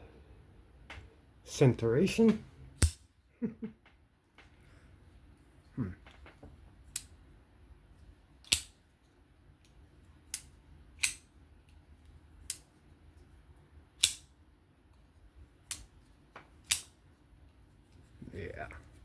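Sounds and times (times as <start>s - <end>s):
folding knife blade clicking: 8.4s - 8.8s, 10.3s - 11.2s, 14.0s - 14.3s, 16.6s - 16.9s.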